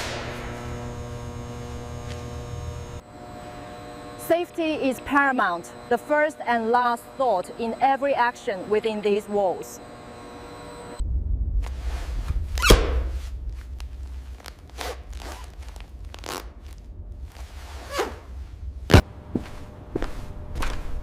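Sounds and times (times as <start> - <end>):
steady low rumble: 0.0 - 3.0, 11.0 - 20.6.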